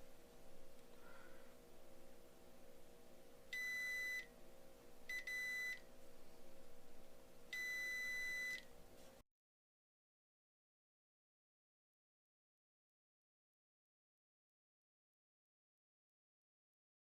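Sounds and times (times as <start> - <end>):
faint steady hum: 0.0 - 9.2
electronic instrument beeps: 3.6 - 4.3, 5.1 - 5.8, 7.6 - 8.6.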